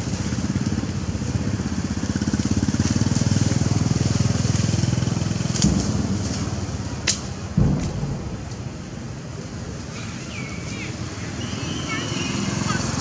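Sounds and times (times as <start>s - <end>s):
motorcycle engine running: 0.0s - 9.3s
thump: 5.6s - 6.5s, 7.6s - 9.1s.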